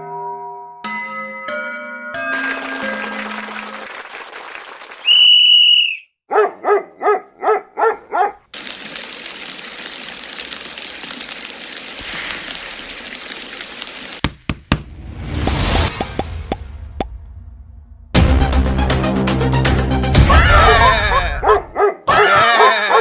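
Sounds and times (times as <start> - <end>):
short high whistle: 5.0 - 6.1
yapping dog barks: 6.3 - 8.5, 21.4 - 23.0
steady hiss: 8.6 - 14.9.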